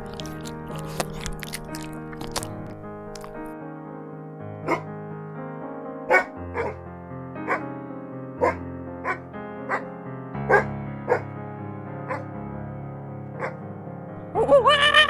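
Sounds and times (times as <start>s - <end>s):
dog barking: 0.0s - 3.3s, 4.6s - 4.9s, 6.1s - 6.8s, 7.4s - 7.7s, 8.4s - 9.9s, 10.5s - 11.3s, 12.1s - 12.3s, 13.4s - 13.6s
background music: 0.0s - 3.6s, 4.3s - 15.0s.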